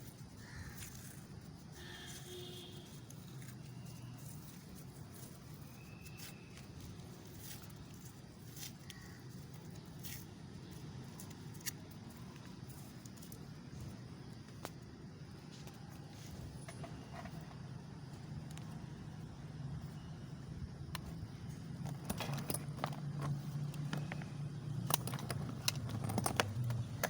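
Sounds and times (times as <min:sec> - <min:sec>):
low outdoor background rumble: 0:00.0 - 0:27.0
sharp small clicks: 0:05.4 - 0:14.8.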